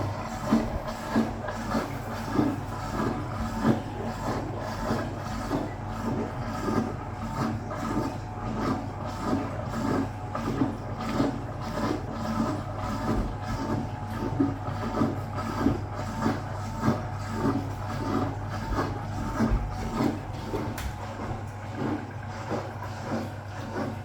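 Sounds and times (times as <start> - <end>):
washing machine spinning: 0.0 - 24.0.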